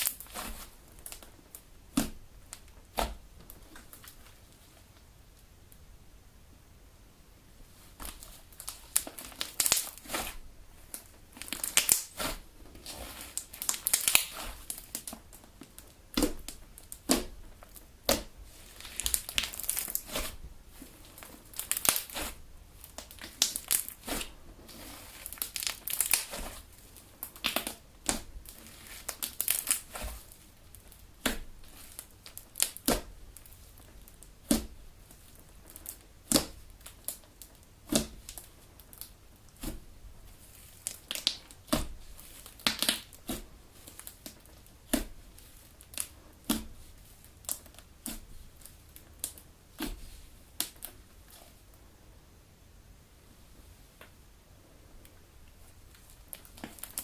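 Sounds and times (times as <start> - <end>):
slime squelching and popping: 8.0 - 50.9.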